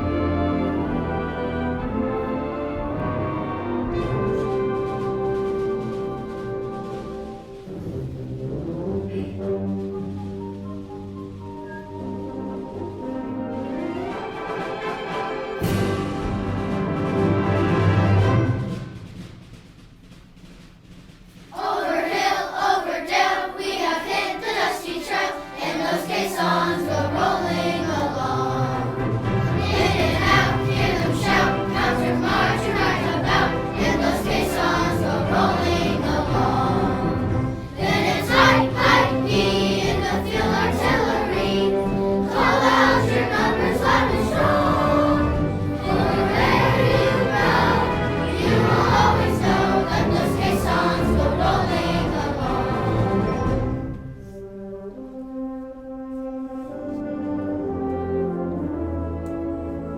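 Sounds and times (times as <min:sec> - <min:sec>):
choir singing: 0:00.0 - 0:10.0, 0:21.5 - 0:54.4
instrumental accompaniment: 0:00.0 - 0:59.9.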